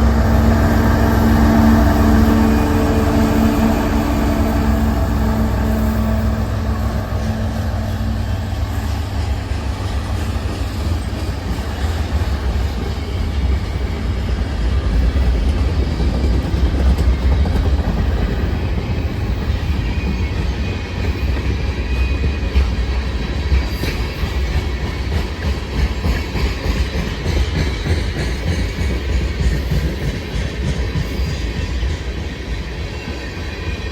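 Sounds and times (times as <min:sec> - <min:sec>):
freight train rolling past: 0:00.0 - 0:33.9
steel wheels clattering over rail joints: 0:00.0 - 0:33.9.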